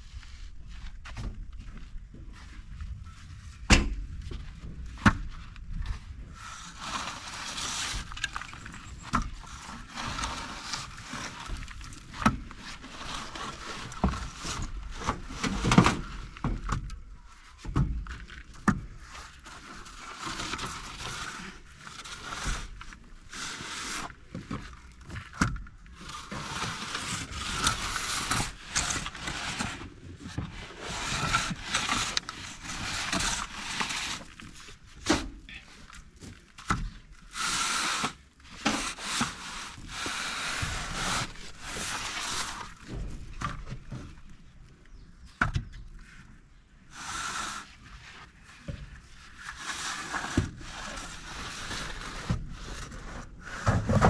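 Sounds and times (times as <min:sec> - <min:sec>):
trowel scraping plaster on wall: 0:26.0 - 0:34.7, 0:37.2 - 0:43.0, 0:49.4 - 0:54.0.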